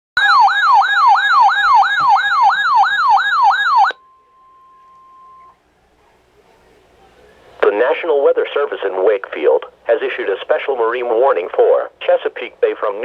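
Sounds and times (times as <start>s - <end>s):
electronic wailing siren: 0.2s - 5.6s
faint steady tone: 3.9s - 7.6s.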